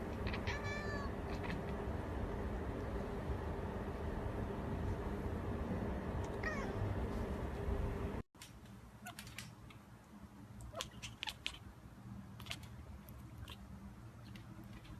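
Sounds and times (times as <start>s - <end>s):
kitten meowing: 0.2s - 1.7s, 6.4s - 6.8s.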